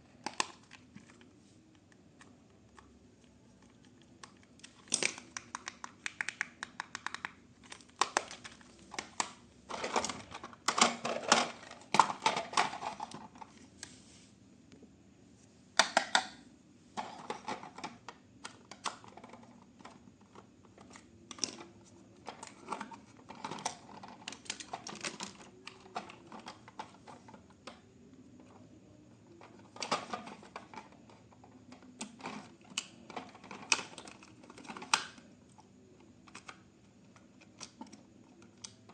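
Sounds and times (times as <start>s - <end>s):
clicks and taps on a toy: 5.0s - 7.4s.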